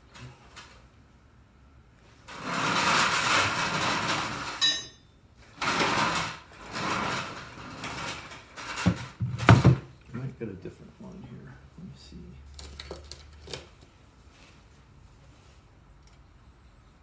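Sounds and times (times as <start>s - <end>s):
drawer sliding: 2.3s - 4.9s, 5.5s - 9.9s.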